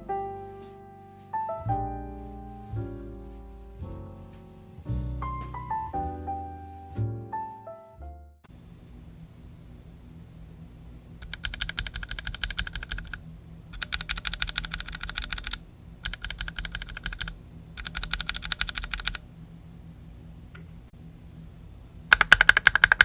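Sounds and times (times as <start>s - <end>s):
faint steady hum: 8.5s - 23.0s
mechanical keyboard typing: 11.2s - 13.2s, 13.8s - 19.2s, 22.1s - 23.0s.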